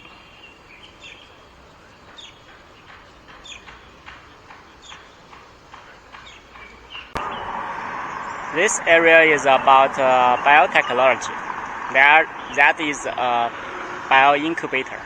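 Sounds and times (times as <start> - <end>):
small birds chirping: 0.0 - 15.0
steady rush of noise: 7.1 - 15.0.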